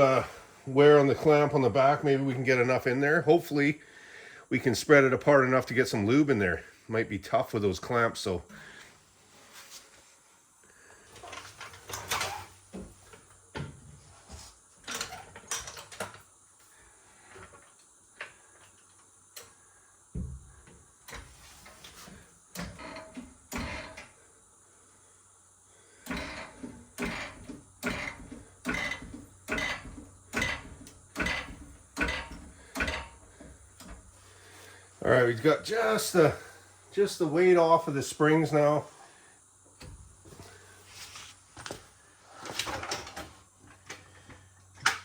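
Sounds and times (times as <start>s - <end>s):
jack pump strokes: 26.0s - 34.8s
knocks and clanks: 26.1s - 34.0s.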